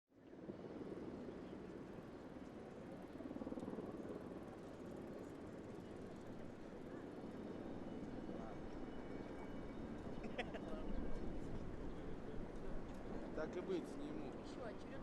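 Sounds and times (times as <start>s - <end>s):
faint outdoor background rumble: 0.2s - 15.0s.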